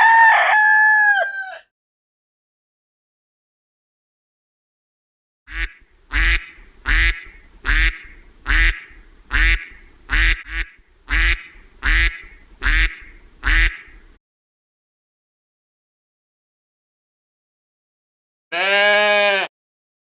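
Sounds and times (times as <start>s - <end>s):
duck quacking: 5.5s - 14.0s.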